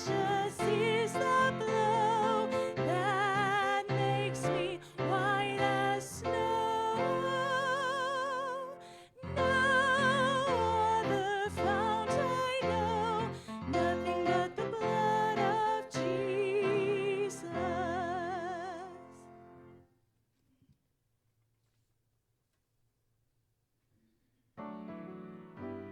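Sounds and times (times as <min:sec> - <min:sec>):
person singing with vibrato: 0:00.0 - 0:19.3.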